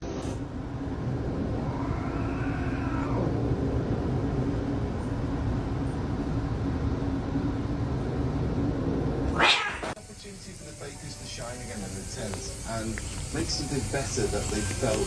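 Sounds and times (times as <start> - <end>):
low mechanical rumble with hum: 0.0 - 15.0
cat meowing: 1.6 - 3.3, 9.3 - 10.0.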